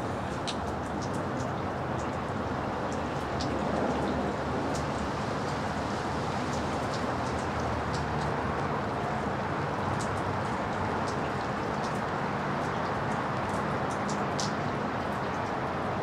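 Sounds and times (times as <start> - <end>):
rain and hail falling: 2.2 - 14.6
sharp hail ticks: 6.4 - 8.4.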